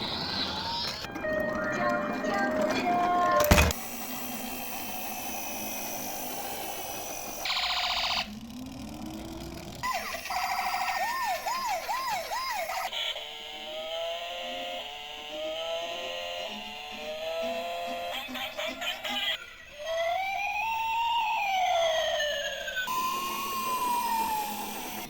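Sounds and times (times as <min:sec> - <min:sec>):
siren wail: 0:00.0 - 0:03.0, 0:07.4 - 0:08.5, 0:09.8 - 0:13.4, 0:19.7 - 0:25.0
harsh siren buzz: 0:03.7 - 0:09.2, 0:09.8 - 0:18.1, 0:19.8 - 0:25.0
warbling siren: 0:04.0 - 0:18.1, 0:19.7 - 0:25.0.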